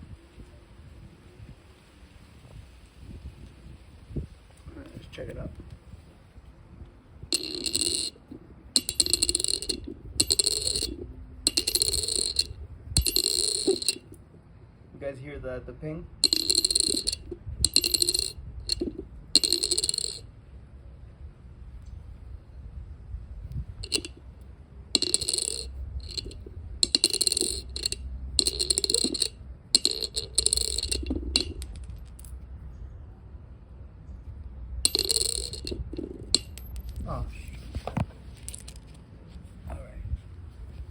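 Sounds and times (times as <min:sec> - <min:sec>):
coin rattling as it bounces: 0:07.3 - 0:14.2, 0:16.2 - 0:20.3, 0:23.8 - 0:24.2, 0:24.9 - 0:32.4, 0:34.8 - 0:37.1, 0:38.4 - 0:39.0
coin ringing ping: 0:07.3 - 0:14.2, 0:16.2 - 0:20.2, 0:23.8 - 0:24.2, 0:25.0 - 0:31.8, 0:34.9 - 0:37.0.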